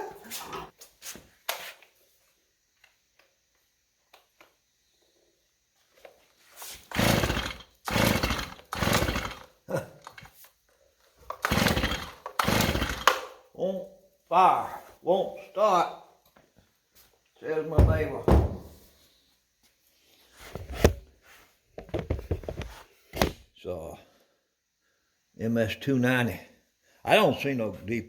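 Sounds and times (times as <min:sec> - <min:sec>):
chainsaw recoil starter pulls: 0:06.8 - 0:10.5, 0:11.2 - 0:13.4.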